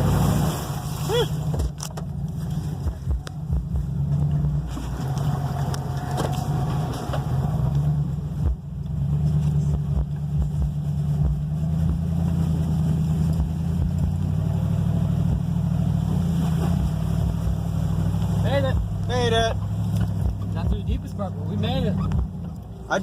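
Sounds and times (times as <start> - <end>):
truck thumping through mud: 0.0 - 8.1
truck engine under load: 0.0 - 23.0.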